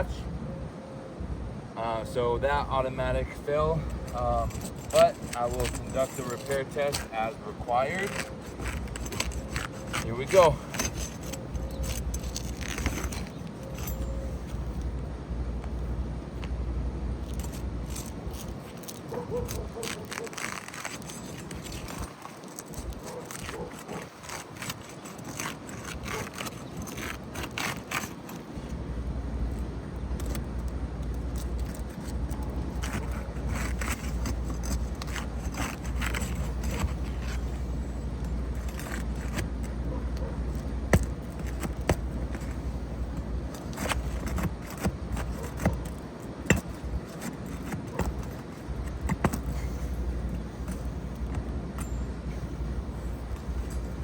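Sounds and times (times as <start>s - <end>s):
low steady rumble: 0.0s - 22.0s
shingles scraping and crackling: 2.7s - 54.0s.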